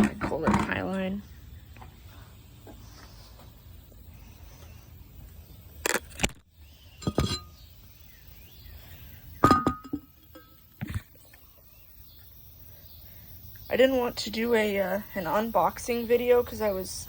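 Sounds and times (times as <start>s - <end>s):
hard objects knocking and clinking: 7.0s - 7.5s, 9.4s - 11.1s.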